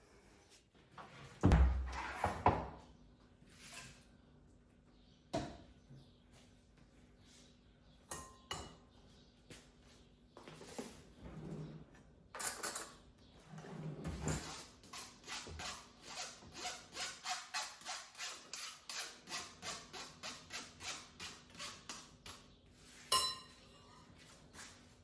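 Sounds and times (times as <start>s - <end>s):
sharp ringing clink: 23.1s - 24.0s.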